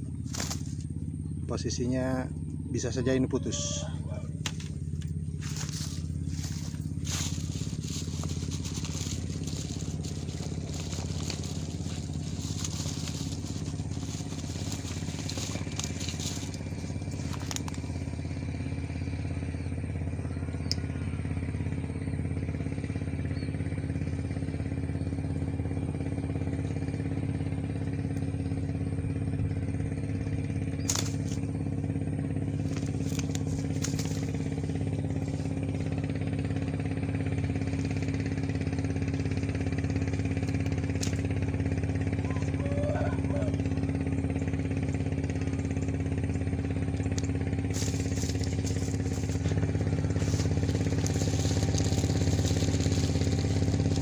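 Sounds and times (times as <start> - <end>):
engine running steadily: 0.0 - 54.0
crackling handling rustles: 0.2 - 1.0, 4.5 - 18.3, 30.8 - 36.4, 47.2 - 54.0.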